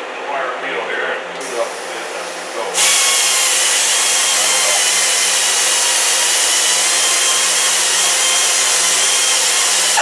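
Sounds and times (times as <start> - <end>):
power tool motor whine: 1.4 - 10.0
wire wheel rasping on metal: 2.7 - 10.0.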